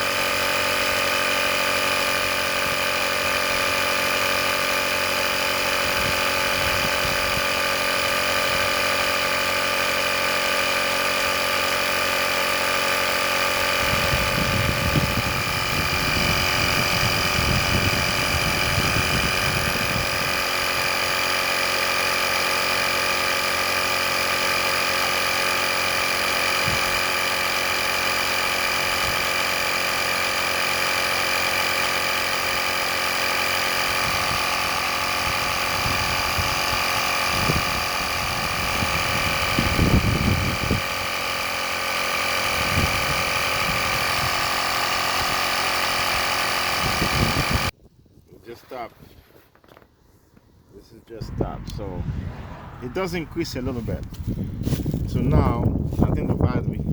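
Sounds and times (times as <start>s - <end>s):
small air compressor whining: 0.0s - 47.8s, 53.0s - 56.9s
low rumble: 51.2s - 56.9s.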